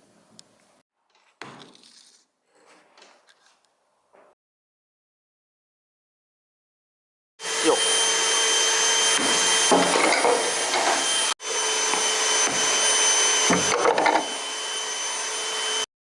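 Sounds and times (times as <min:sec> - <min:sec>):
blower running: 0:07.4 - 0:15.9.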